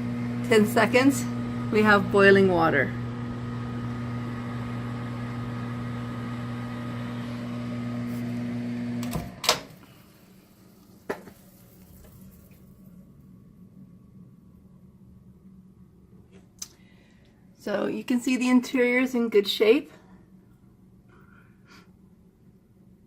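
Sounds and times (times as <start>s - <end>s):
microwave oven humming: 0.0s - 19.3s
microwave click: 5.3s - 9.8s.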